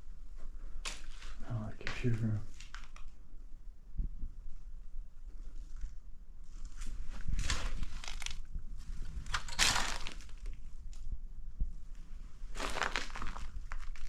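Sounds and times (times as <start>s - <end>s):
debris crunching and crackling: 7.2s - 8.5s, 9.2s - 10.7s, 12.5s - 14.0s.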